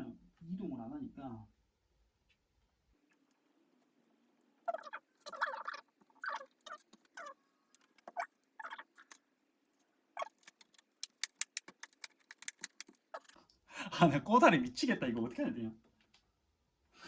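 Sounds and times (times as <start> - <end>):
sharp clicks: 10.2 - 13.4.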